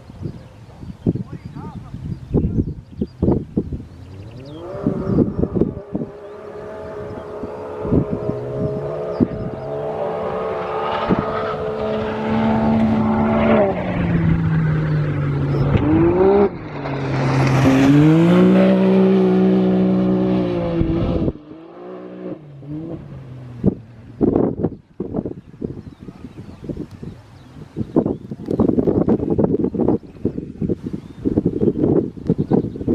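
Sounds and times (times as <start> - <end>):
race car engine revving: 4.0 - 24.6.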